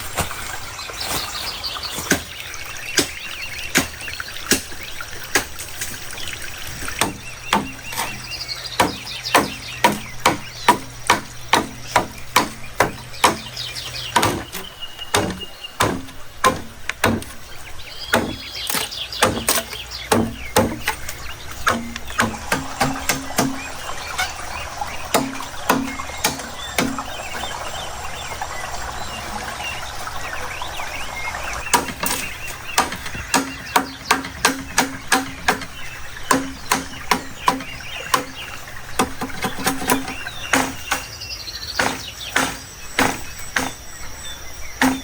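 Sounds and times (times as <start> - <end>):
knife chopping on a board: 39.9 - 41.1, 41.8 - 43.8.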